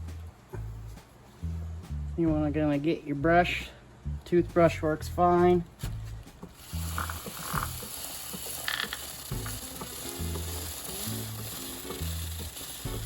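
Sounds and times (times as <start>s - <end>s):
background music with bass: 0.0s - 13.0s
toothbrush scrubbing metal chain: 6.6s - 13.0s.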